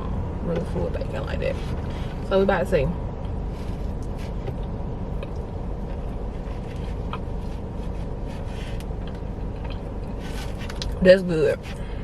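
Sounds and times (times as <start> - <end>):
car engine running: 0.0 - 12.0
plastic fork scraping container: 10.1 - 11.8.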